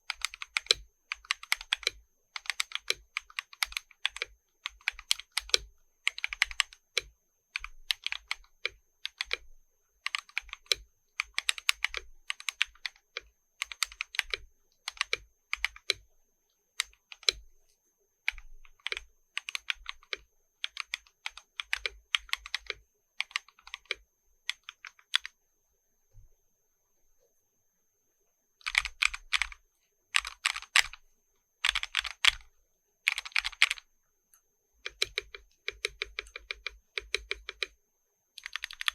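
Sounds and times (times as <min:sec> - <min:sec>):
mechanical keyboard typing: 0:00.0 - 0:16.0, 0:16.8 - 0:17.4, 0:18.3 - 0:25.4, 0:28.6 - 0:31.0, 0:31.6 - 0:33.9, 0:34.8 - 0:37.8, 0:38.4 - 0:38.9.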